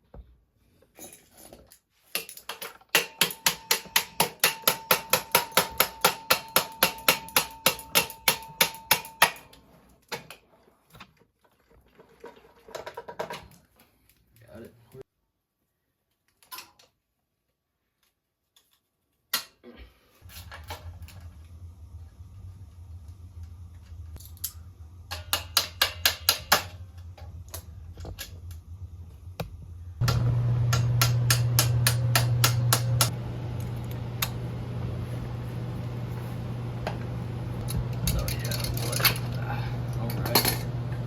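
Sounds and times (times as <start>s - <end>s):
metal tools tapping metal: 2.1s - 9.6s, 24.2s - 26.8s, 30.0s - 33.1s, 37.6s - 40.7s
steady low hum: 20.3s - 41.0s.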